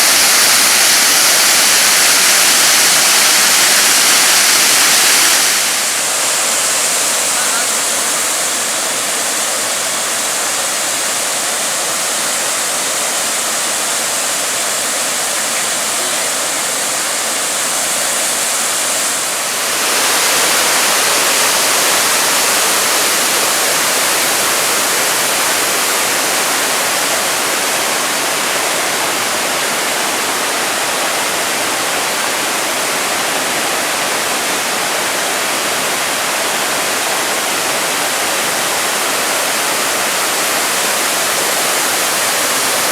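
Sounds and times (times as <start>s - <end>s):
waterfall roaring: 0.0s - 42.9s.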